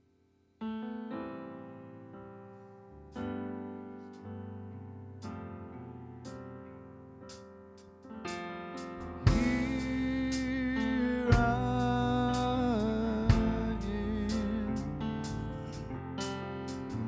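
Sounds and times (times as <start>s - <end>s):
band playing slow instrumental: 9.2s - 17.0s.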